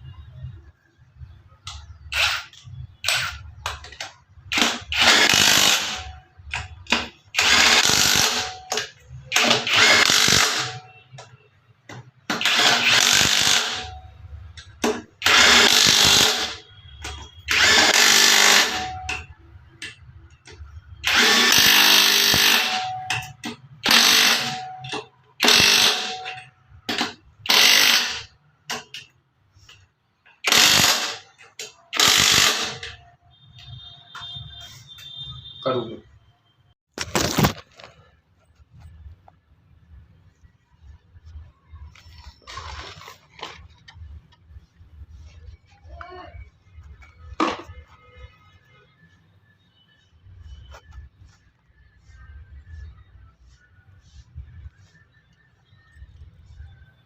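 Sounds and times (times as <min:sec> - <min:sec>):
power tool bursts: 0:04.5 - 0:06.1, 0:07.0 - 0:10.9, 0:12.3 - 0:14.0, 0:15.2 - 0:16.6, 0:17.5 - 0:19.1, 0:21.0 - 0:23.0, 0:23.8 - 0:24.8, 0:25.4 - 0:28.3, 0:30.4 - 0:31.3, 0:31.9 - 0:33.0.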